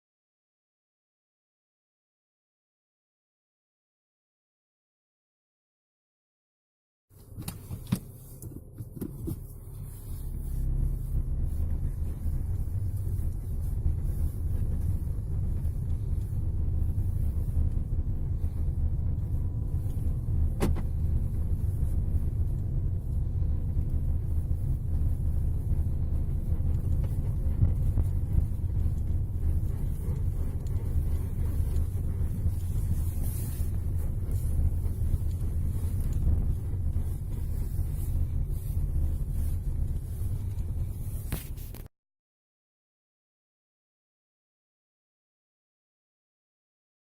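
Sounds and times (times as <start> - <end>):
car low rumble: 7.1 - 41.9.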